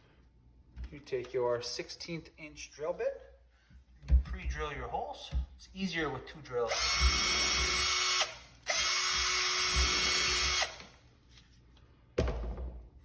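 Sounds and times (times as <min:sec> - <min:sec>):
power drill running: 0:06.7 - 0:10.9.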